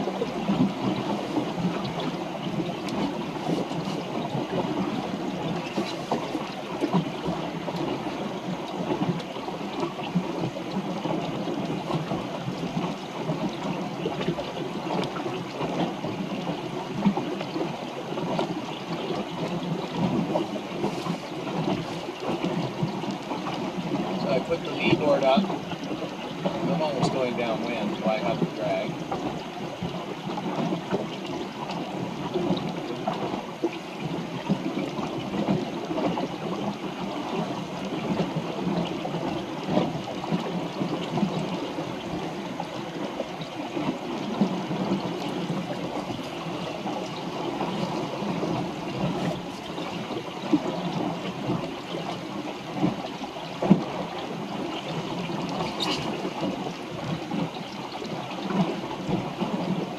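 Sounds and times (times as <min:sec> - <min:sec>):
water rushing along a hull: 0:00.0 - 0:59.9.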